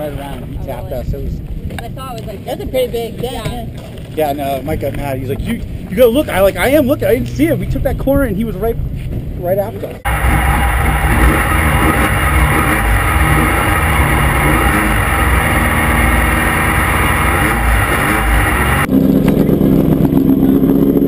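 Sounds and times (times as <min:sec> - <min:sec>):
wind and road noise: 0:00.0 - 0:21.0
race car engine running: 0:10.1 - 0:21.0.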